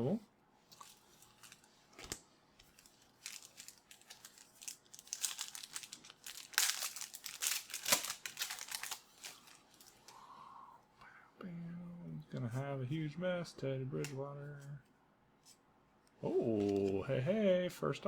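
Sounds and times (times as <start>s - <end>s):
card pack wrapper tearing and crinkling: 0.8s - 10.0s, 16.5s - 17.0s.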